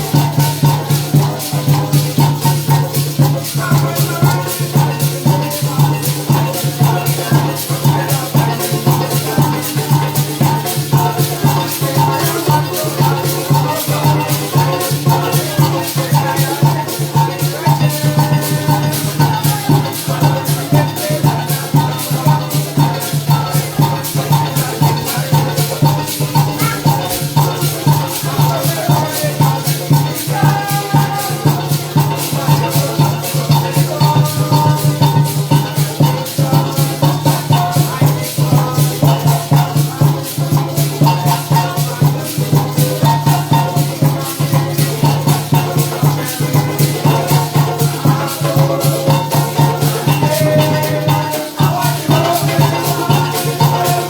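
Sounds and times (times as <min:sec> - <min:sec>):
pulsing bass line: 0:00.0 - 0:40.0
drum beat: 0:00.0 - 0:54.0
maraca strokes: 0:00.0 - 0:54.0.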